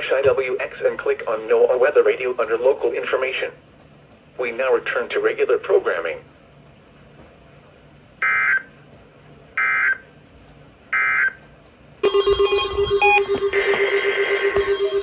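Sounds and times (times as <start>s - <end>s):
static-laden radio buzz and tones: 12.0s - 15.0s.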